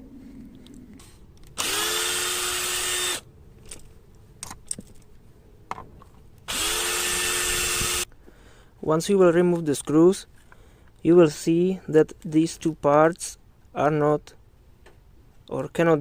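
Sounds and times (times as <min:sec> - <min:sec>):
cordless drill whining: 0:01.5 - 0:03.3, 0:06.5 - 0:08.1.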